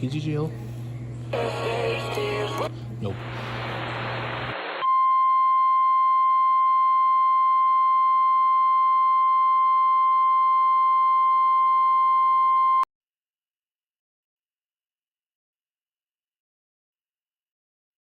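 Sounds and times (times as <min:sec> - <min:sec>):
steady alarm tone: 0:04.8 - 0:12.8.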